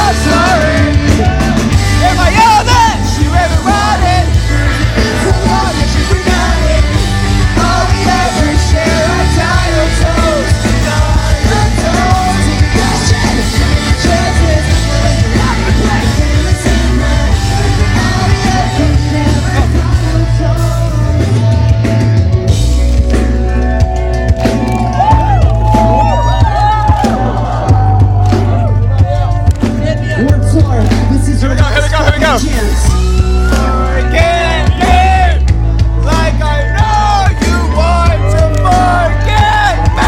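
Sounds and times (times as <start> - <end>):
person singing: 0.0 - 22.1
drums: 0.0 - 40.0
heavy bass: 0.0 - 40.0
pop-punk band playing live: 0.0 - 40.0.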